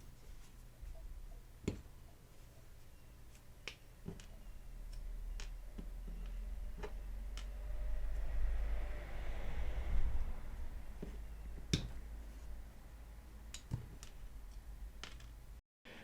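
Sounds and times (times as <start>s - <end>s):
low hum: 4.2s - 15.0s.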